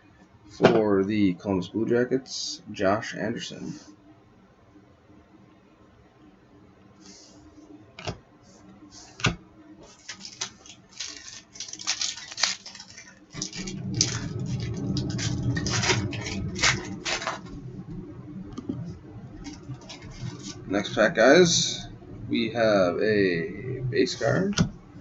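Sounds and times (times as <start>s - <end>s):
cards shuffled: 9.9s - 14.2s
wrapper tearing and crinkling: 9.9s - 17.6s, 19.4s - 20.7s.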